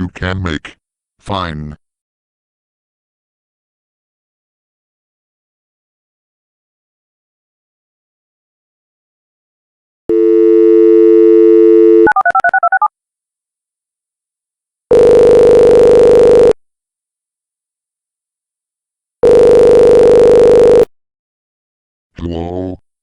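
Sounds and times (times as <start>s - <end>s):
telephone dial tone: 10.1s - 12.9s, 14.9s - 16.6s, 19.2s - 20.9s
telephone ringing tones: 10.1s - 12.9s, 14.9s - 16.6s, 19.2s - 20.9s
touch-tone dialing beeps: 10.1s - 12.9s.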